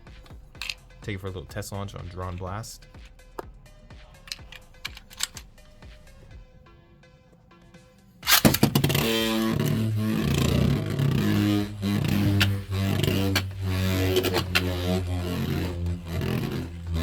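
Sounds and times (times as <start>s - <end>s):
launcher rip: 8.2s - 17.0s
spinning top whirring: 8.2s - 17.0s
top clicking against walls: 8.3s - 17.0s.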